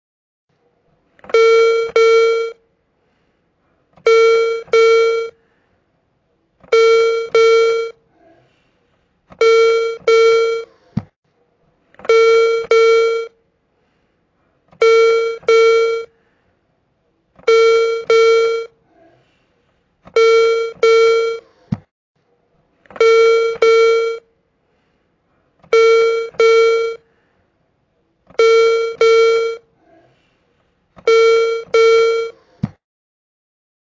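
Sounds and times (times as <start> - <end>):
hearing aid double beep: 1.2 - 2.6, 4.0 - 5.4, 6.6 - 8.0, 9.4 - 10.7, 12.0 - 13.4, 14.8 - 16.1, 17.4 - 18.7, 20.1 - 21.4, 22.9 - 24.3, 25.7 - 27.0, 28.3 - 29.6, 31.0 - 32.4.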